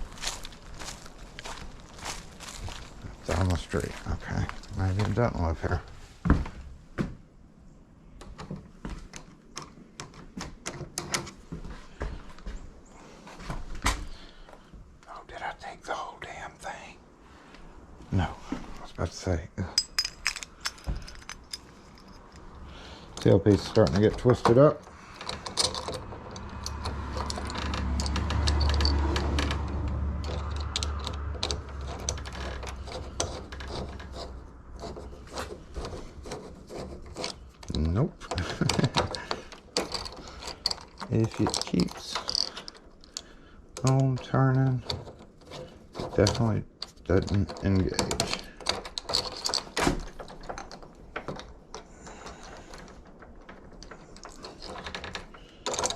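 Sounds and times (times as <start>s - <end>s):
door lock metal clicks and rattles: 8.1s - 11.4s, 19.8s - 55.9s.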